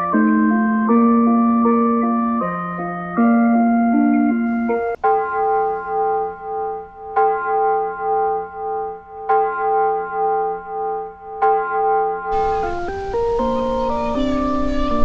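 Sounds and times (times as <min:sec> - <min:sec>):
electronic melody on loudspeaker: 0:03.9 - 0:08.8, 0:12.3 - 0:15.0
electronic bell tone warbling: 0:04.5 - 0:09.1, 0:12.3 - 0:15.0.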